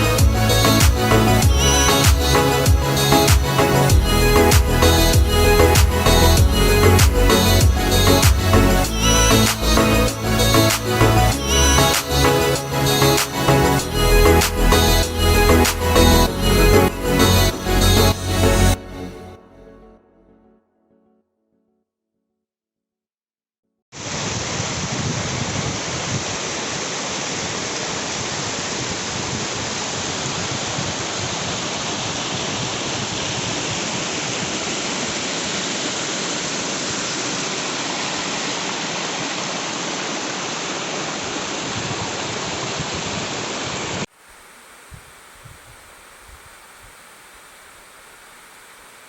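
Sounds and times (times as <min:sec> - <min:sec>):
waterfall rushing: 0:00.0 - 0:18.8, 0:24.0 - 0:49.0
quiet outdoor hiss: 0:44.1 - 0:49.0.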